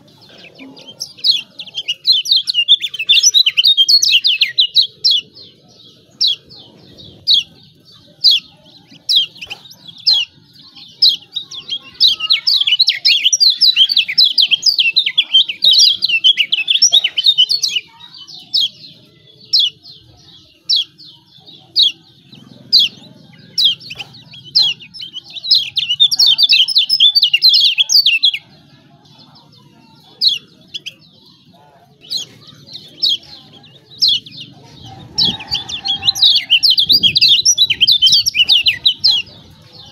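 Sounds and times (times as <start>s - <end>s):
bird rapid high chirping: 0.0s - 39.9s.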